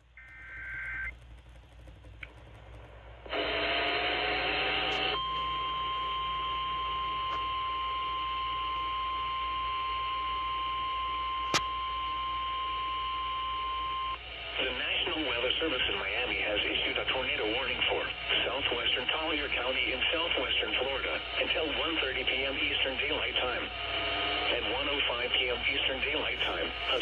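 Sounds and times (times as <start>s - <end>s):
harsh static noise: 0.0s - 7.4s, 14.2s - 27.0s.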